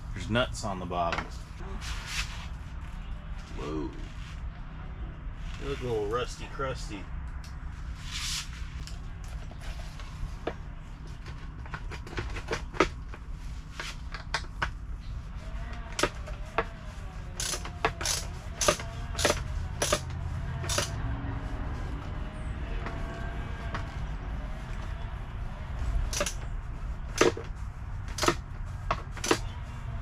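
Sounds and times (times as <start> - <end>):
low steady hum: 0.0 - 30.0
hand tools clicking on metal: 17.4 - 21.0, 26.1 - 26.4.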